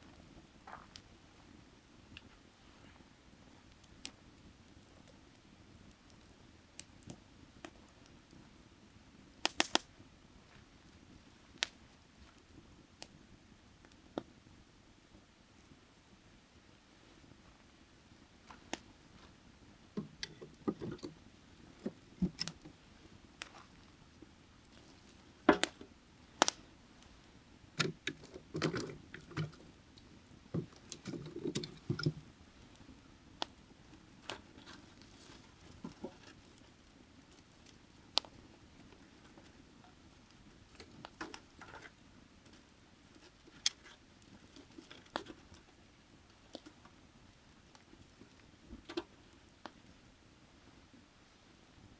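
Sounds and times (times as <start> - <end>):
firewood crackling and popping: 0.0 - 50.0.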